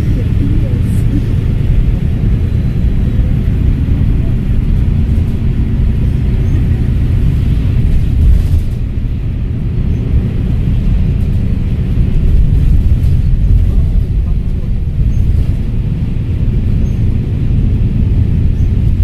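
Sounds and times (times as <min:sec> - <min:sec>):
bus diesel engine rumbling: 0:00.0 - 0:19.0
road and body noise: 0:00.0 - 0:19.0.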